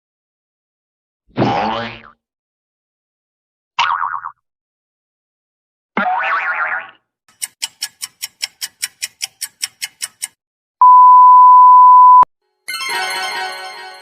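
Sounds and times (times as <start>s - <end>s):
high clicks: 7.3s - 10.4s
censor bleep: 10.8s - 12.3s.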